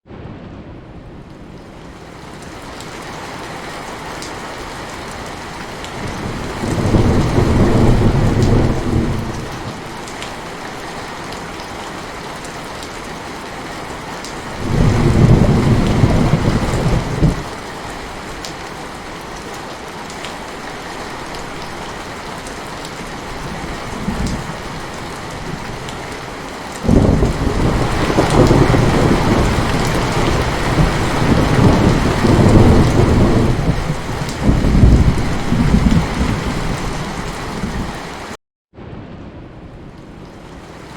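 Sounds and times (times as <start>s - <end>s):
heavy rain: 0.0s - 40.9s
deep rolls of thunder: 6.0s - 9.6s, 14.6s - 17.5s, 26.8s - 38.0s.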